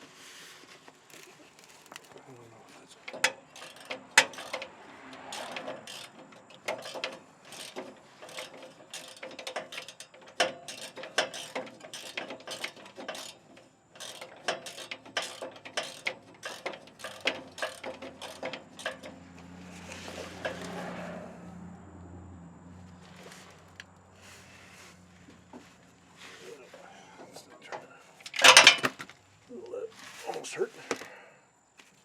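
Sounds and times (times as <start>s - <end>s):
socket ratchet clicking: 14.0s - 19.2s.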